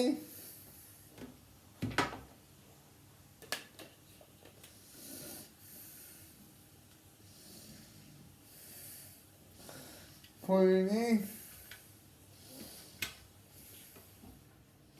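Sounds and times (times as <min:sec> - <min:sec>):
soft breaths: 0:00.2 - 0:01.2, 0:04.6 - 0:10.5, 0:11.1 - 0:14.9.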